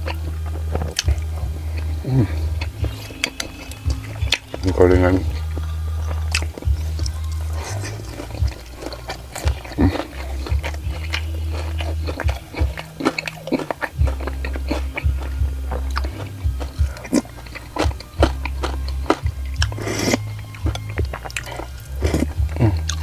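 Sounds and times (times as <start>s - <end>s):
low background music: 0.0s - 23.0s
person chewing crunchy food: 0.0s - 23.0s
wet mouth clicks: 0.0s - 23.0s.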